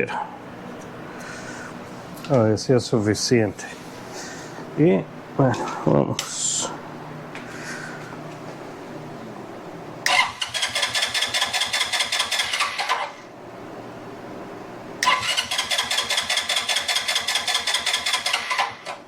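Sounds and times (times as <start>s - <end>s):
electric starter cranking engine: 10.0s - 13.2s, 15.0s - 19.0s.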